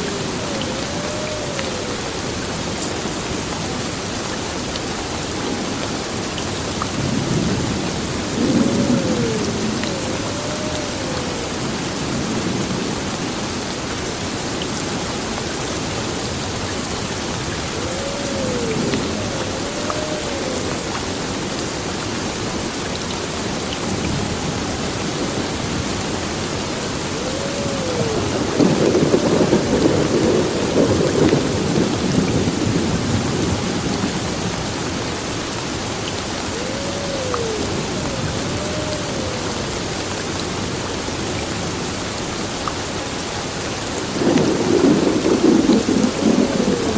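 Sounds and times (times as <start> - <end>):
heavy rain on building: 0.0 - 46.9
rolling thunder: 6.9 - 13.4, 17.5 - 22.6, 23.4 - 34.7, 44.1 - 46.9.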